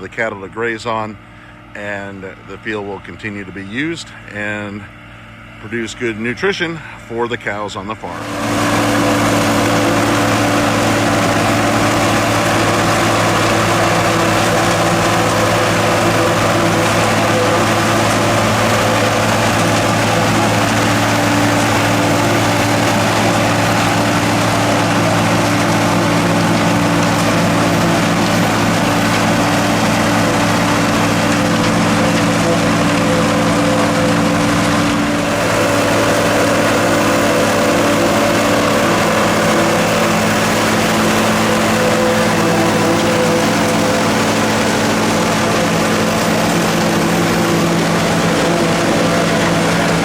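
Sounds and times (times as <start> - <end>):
tractor diesel engine running: 0.0 - 50.0
forage harvester chopping corn: 7.4 - 50.0.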